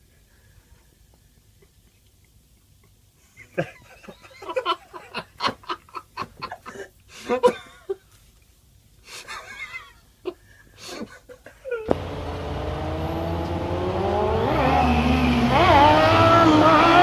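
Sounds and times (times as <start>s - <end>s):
vehicle engine revving: 11.9s - 17.0s.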